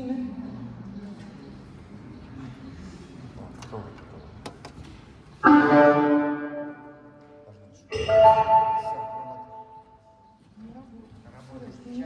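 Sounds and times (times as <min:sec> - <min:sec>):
loud music chords: 0:05.4 - 0:07.0, 0:07.9 - 0:09.6.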